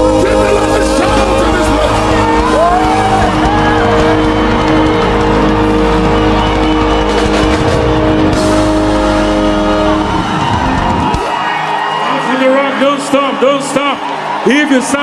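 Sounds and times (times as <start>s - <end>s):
drums: 0.0s - 12.0s
live praise band music: 0.0s - 15.0s.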